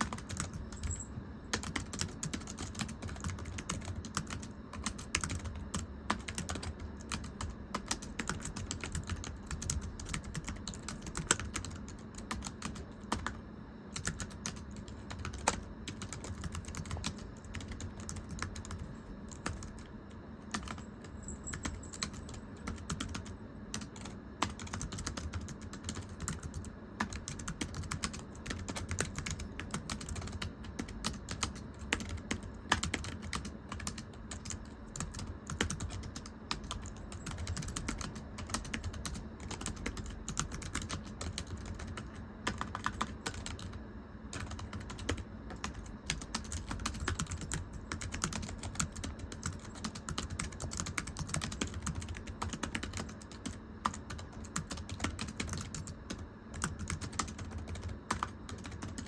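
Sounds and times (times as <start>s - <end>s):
keyboard typing clicks: 0.0s - 59.0s.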